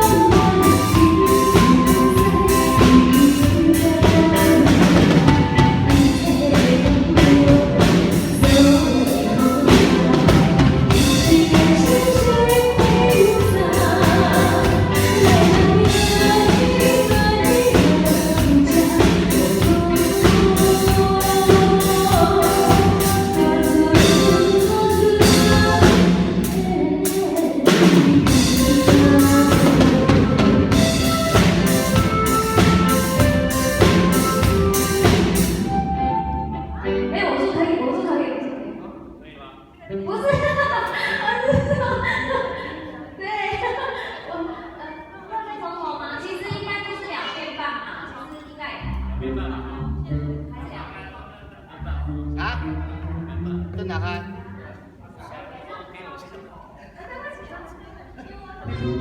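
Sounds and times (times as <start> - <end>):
drum-kit beat: 0.0 - 36.2
person singing: 0.0 - 37.2
live band music: 0.0 - 37.7, 52.1 - 54.6, 58.7 - 59.0.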